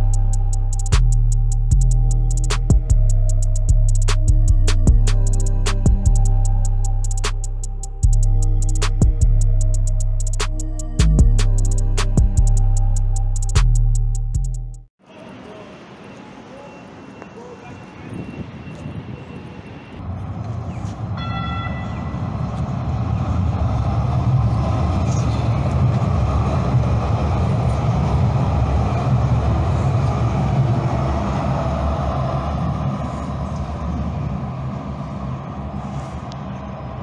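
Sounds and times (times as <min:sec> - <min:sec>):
light-rail train rumbling: 0:15.0 - 0:37.0.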